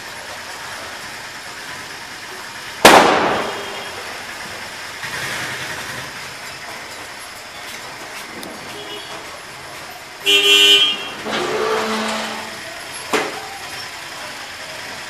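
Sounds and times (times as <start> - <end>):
steady background noise: 0.0 - 15.0
loud bang: 2.8 - 4.2.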